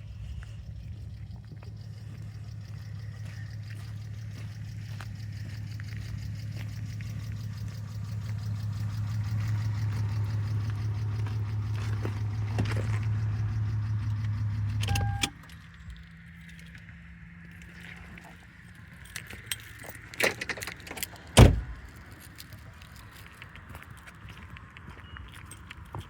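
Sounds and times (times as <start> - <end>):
car engine humming: 0.6 - 22.3
short electronic beep: 14.8 - 15.3.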